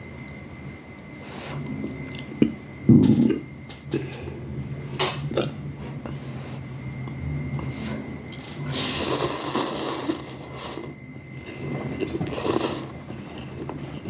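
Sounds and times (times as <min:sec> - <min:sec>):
soft eating sounds: 0:00.0 - 0:14.0
noodles being slurped: 0:08.6 - 0:11.0.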